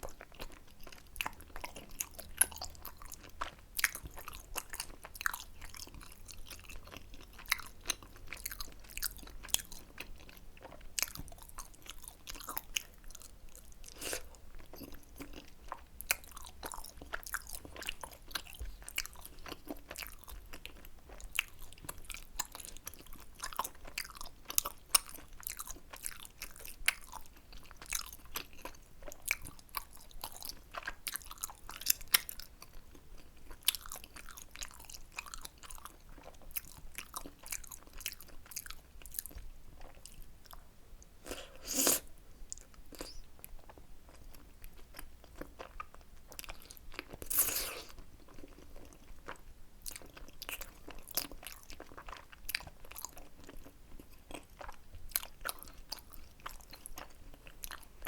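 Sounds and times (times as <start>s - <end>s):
close-miked wet chewing: 0.0s - 58.0s.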